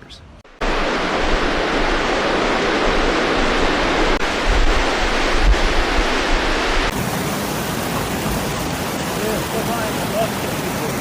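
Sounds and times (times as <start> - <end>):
wind rumble on microphone: 0.0 - 6.9
rushing floodwater: 0.5 - 11.0.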